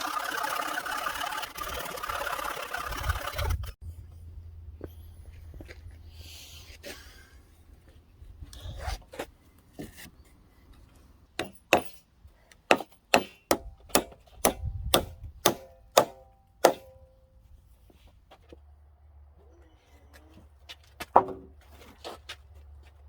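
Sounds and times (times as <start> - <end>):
hammer driving nails into timber: 11.4 - 12.0, 12.6 - 17.0.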